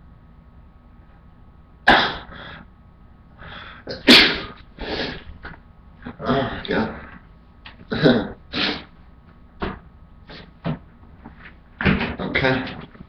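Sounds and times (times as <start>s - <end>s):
man sneezing: 1.9s - 2.5s, 3.9s - 5.2s, 7.9s - 8.9s.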